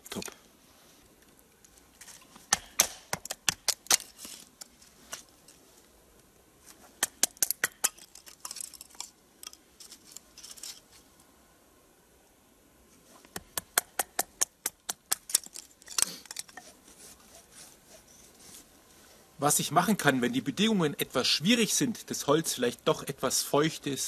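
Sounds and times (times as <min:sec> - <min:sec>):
knife chopping wood: 0:02.5 - 0:04.1.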